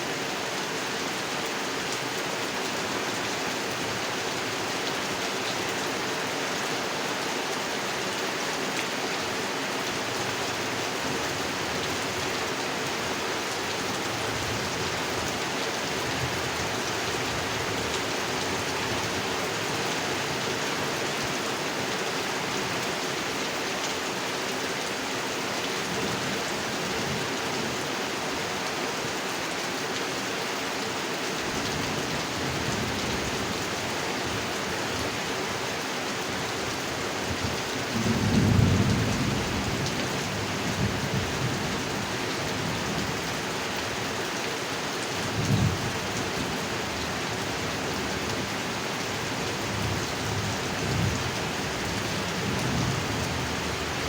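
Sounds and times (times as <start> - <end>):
heavy rain on a pond: 0.0 - 54.0.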